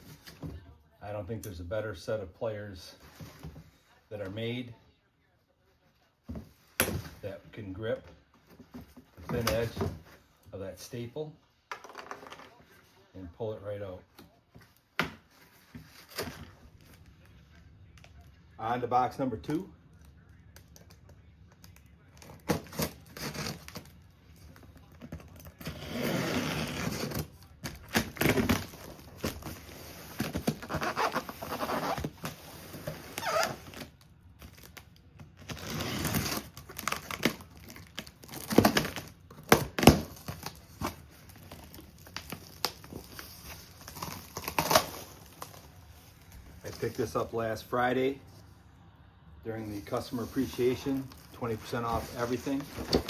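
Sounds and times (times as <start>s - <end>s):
cardboard tearing and crinkling: 22.2s - 24.0s, 25.3s - 45.8s, 49.9s - 53.0s
knocks and scrapes of handled contents: 49.7s - 53.0s.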